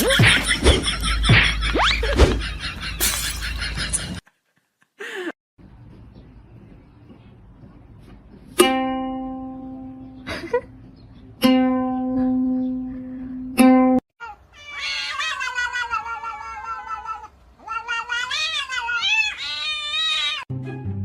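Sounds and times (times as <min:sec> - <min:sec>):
cat meowing: 0:14.2 - 0:20.4.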